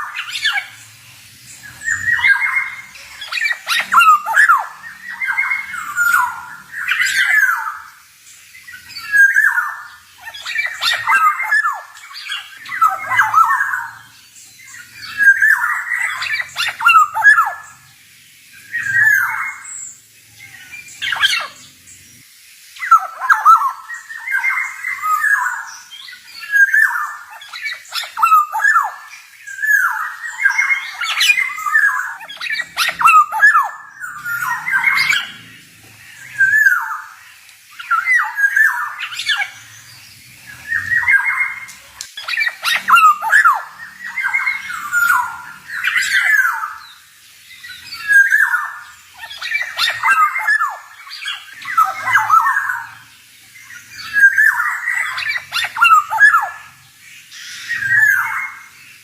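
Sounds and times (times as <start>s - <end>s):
bird singing whistles and clicks: 40.7s - 46.5s.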